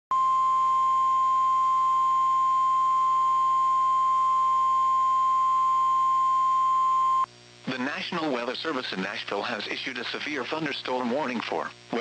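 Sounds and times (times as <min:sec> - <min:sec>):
steady alarm beep: 0:00.2 - 0:07.3.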